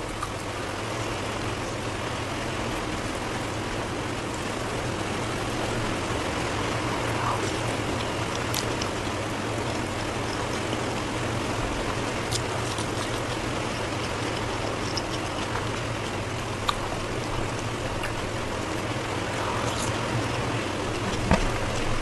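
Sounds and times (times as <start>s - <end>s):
background hiss: 0.0s - 12.7s, 13.5s - 22.0s
eating clicks: 7.0s - 11.0s, 11.9s - 22.0s.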